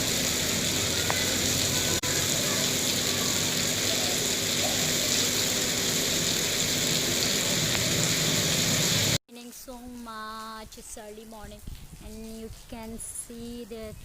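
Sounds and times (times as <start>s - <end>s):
heavy rain pouring: 0.0s - 9.2s.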